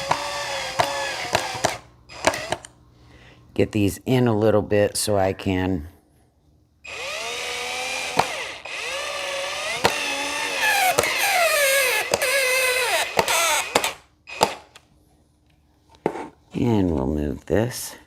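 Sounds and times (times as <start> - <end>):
power drill driving screws: 0.0 - 2.7, 6.9 - 14.8.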